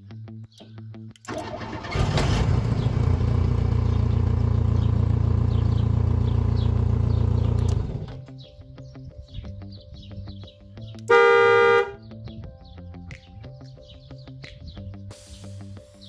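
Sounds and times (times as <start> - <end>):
car engine starting and running: 1.3 - 8.2.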